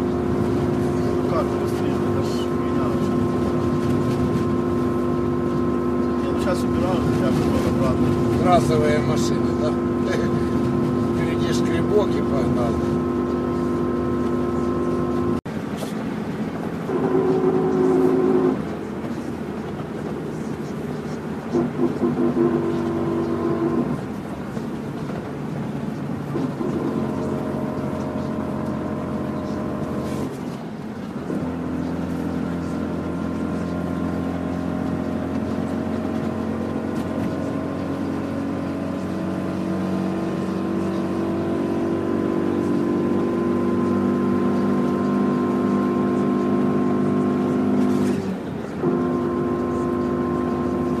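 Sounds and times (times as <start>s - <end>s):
car engine drone: 0.0s - 51.0s
tyre and road noise: 0.0s - 51.0s.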